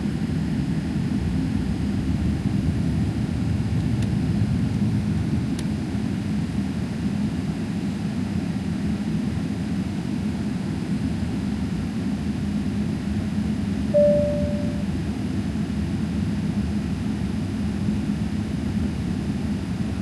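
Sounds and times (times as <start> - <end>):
airplane cabin drone: 14.0 - 14.9
chime tone: 14.0 - 14.9.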